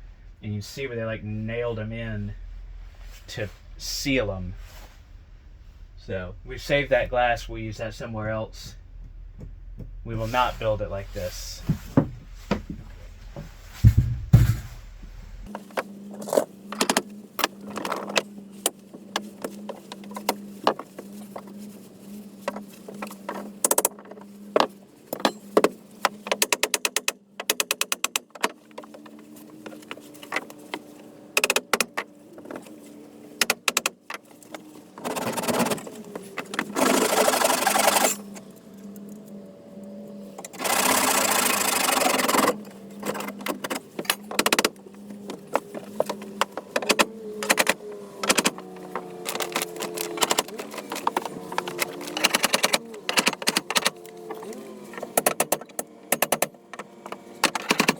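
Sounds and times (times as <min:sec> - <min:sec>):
steady low hum: 0:00.0 - 0:23.0
tool knocks and taps on wood: 0:11.7 - 0:14.9
fast clicks: 0:35.0 - 0:38.4, 0:40.4 - 0:44.8
power tool running: 0:36.7 - 0:38.4, 0:40.4 - 0:42.6.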